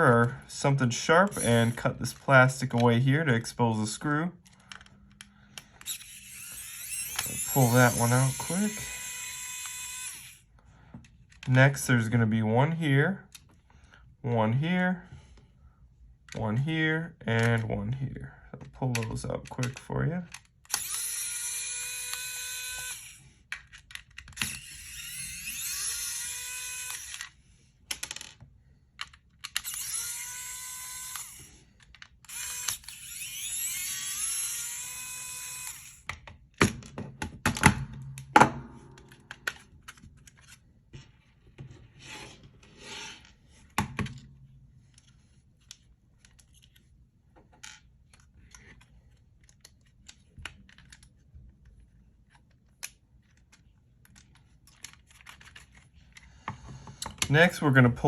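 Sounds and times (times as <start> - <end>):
electric screwdriver whining: 1.3 - 2.2, 5.6 - 10.5, 20.6 - 23.4, 24.3 - 27.4, 29.5 - 36.2
screws and plastic clicking: 1.3 - 3.0, 4.4 - 11.7, 18.9 - 38.3, 47.5 - 57.4.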